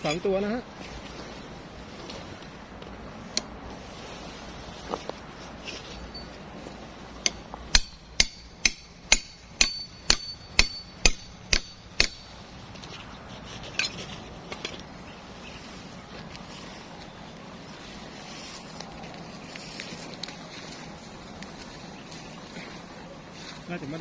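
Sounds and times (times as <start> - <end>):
hammer striking wooden peg: 7.2 - 12.3.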